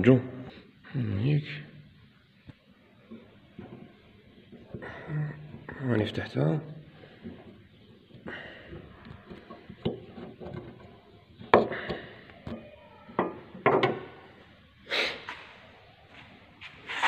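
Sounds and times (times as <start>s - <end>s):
car parts clicking and knocking: 7.2s - 12.6s, 13.2s - 14.2s.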